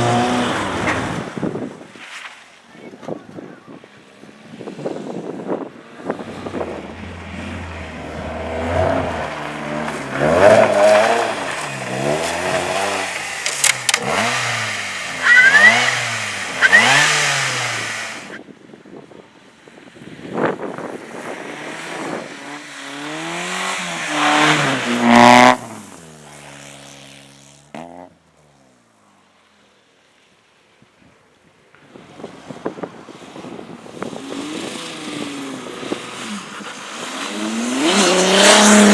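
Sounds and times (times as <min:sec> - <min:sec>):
car engine revving hard: 0:00.0 - 0:01.3, 0:05.7 - 0:18.4, 0:21.6 - 0:26.1, 0:34.1 - 0:38.9
tire squeals: 0:05.8 - 0:18.4
sharp exhaust pops: 0:06.1 - 0:18.1.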